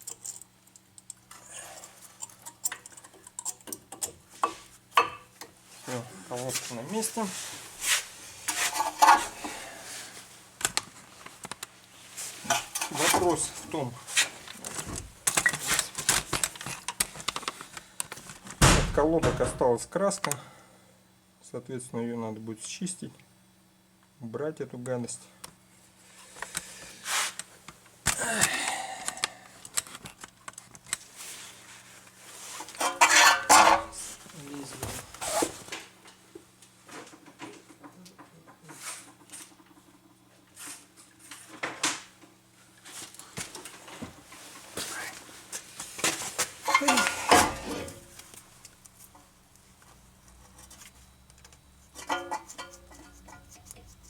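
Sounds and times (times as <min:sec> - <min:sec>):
hand tools clattering on metal: 0:32.8 - 0:34.0, 0:46.6 - 0:47.7, 0:52.0 - 0:53.5
metal ringing: 0:52.0 - 0:53.4.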